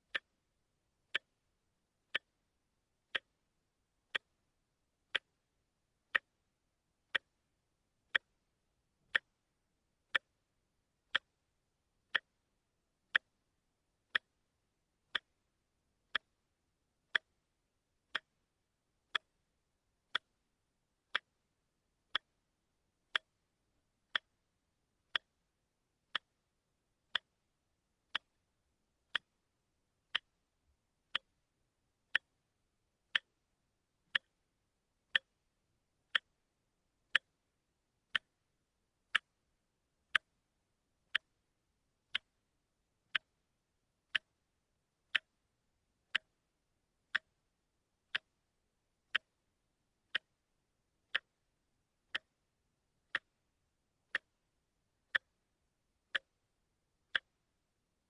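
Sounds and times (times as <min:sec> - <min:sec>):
watch ticking: 0:00.0 - 0:00.4, 0:01.1 - 0:01.4, 0:02.1 - 0:02.4, 0:03.0 - 0:03.5, 0:04.1 - 0:04.5, 0:05.1 - 0:07.4, 0:08.1 - 0:11.5, 0:12.1 - 0:12.5, 0:13.1 - 0:16.5, 0:17.1 - 0:21.5, 0:22.1 - 0:24.4, 0:25.1 - 0:25.4, 0:26.1 - 0:27.5, 0:28.1 - 0:30.5, 0:31.1 - 0:31.5, 0:32.1 - 0:33.5, 0:34.1 - 0:35.5, 0:36.1 - 0:38.5, 0:39.1 - 0:41.5, 0:42.1 - 0:43.4, 0:44.1 - 0:46.4, 0:47.1 - 0:49.4, 0:50.1 - 0:55.5, 0:56.1 - 0:57.6.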